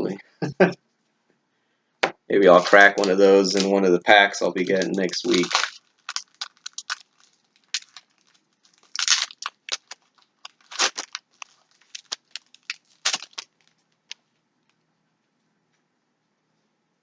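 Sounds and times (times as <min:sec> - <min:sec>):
foil wrapper crinkling and tearing: 0:02.5 - 0:14.2.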